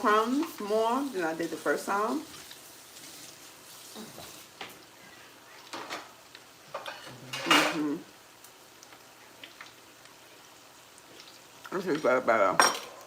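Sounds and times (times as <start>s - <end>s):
faint frying hiss: 0.0s - 13.0s
dishes and cutlery clinking: 6.7s - 7.9s, 12.6s - 13.0s.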